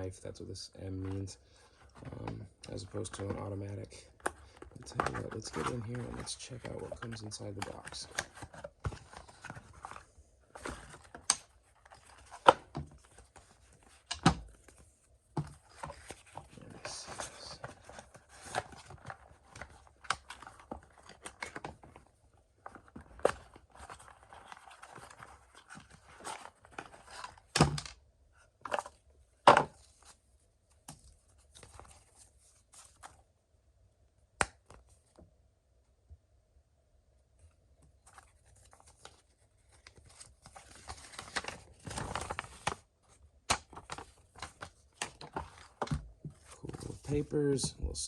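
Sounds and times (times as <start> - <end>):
paper and packaging rustling: 1.0 - 27.5, 38.0 - 48.0.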